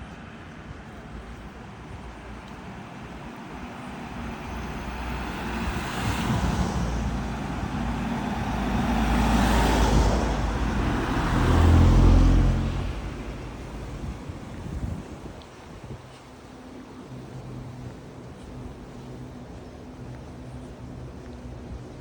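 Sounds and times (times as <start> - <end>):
vehicle driving past: 4.1 - 14.2.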